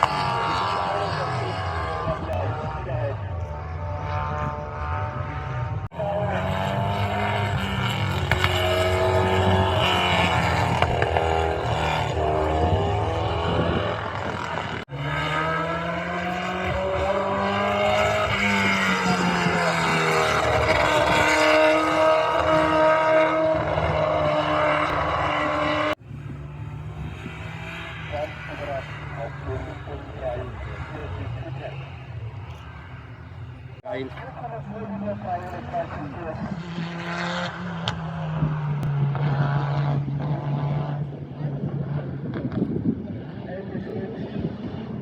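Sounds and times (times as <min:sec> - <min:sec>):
racing engine revving: 0:00.0 - 0:43.4.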